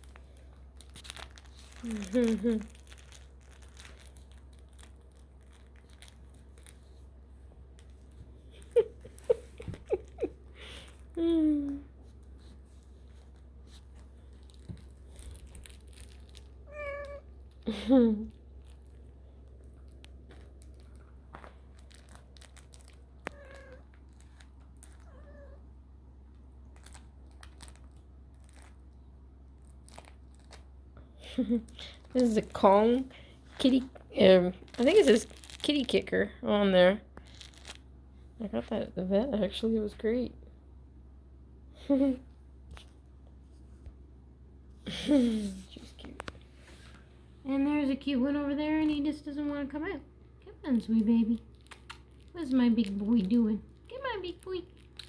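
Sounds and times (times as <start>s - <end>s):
soft rustling: 0.0s - 30.8s, 31.6s - 36.0s, 42.1s - 44.2s, 45.0s - 55.0s
kittens mewing: 16.6s - 17.6s, 23.2s - 24.0s, 24.9s - 25.7s
light clicks and rustles: 45.6s - 47.1s.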